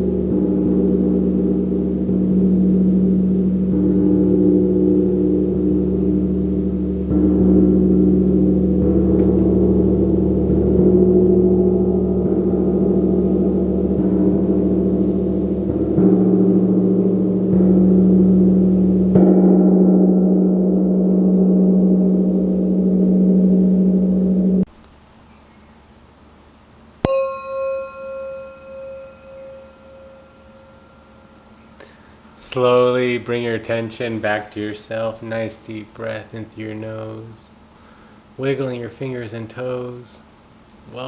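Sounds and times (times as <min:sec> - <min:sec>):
gong shimmering: 0:00.0 - 0:24.7, 0:27.0 - 0:33.0.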